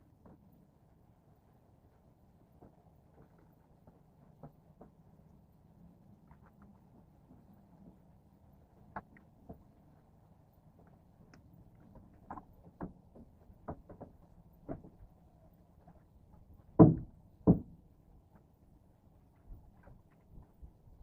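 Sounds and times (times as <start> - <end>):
knocks and bumps on a boat: 12.2 - 15.0, 16.6 - 17.9.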